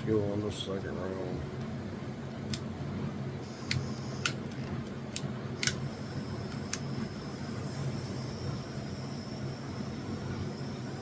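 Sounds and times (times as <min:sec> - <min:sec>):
steady low hum: 0:00.0 - 0:11.0
piezo igniter clicking: 0:03.7 - 0:05.9
torch flame hissing: 0:05.6 - 0:11.0.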